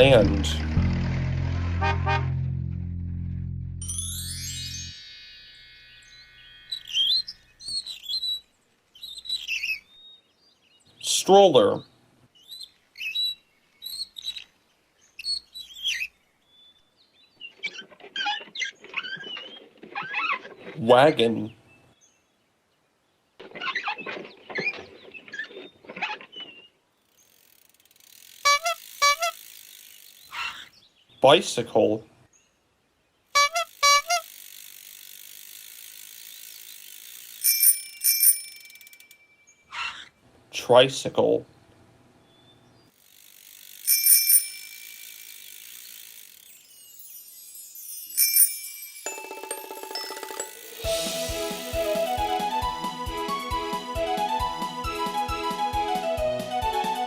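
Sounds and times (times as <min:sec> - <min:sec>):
bicycle horn honks: 0:01.6 - 0:02.5, 0:28.4 - 0:29.5, 0:33.4 - 0:34.4
bicycle bell ringing: 0:03.8 - 0:07.6, 0:36.4 - 0:39.6, 0:43.7 - 0:51.6
small birds chirping: 0:05.9 - 0:34.3, 0:39.4 - 0:43.9
freewheel clicking: 0:27.2 - 0:30.3, 0:33.6 - 0:39.2, 0:43.0 - 0:46.7
bicycle tyres rolling hiss: 0:33.7 - 0:37.4, 0:50.8 - 0:52.6.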